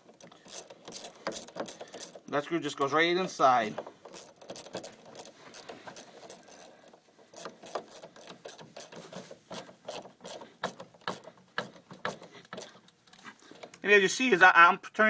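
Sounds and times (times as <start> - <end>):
ratchet clicking: 0.0 - 2.9, 3.6 - 13.8.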